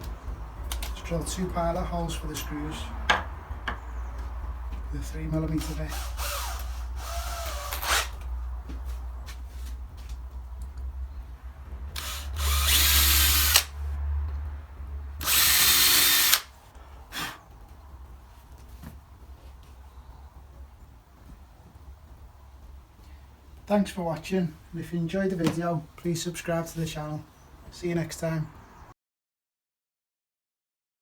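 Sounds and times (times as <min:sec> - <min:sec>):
electric drill boring holes: 0:05.6 - 0:08.2, 0:11.9 - 0:13.8, 0:15.2 - 0:16.5.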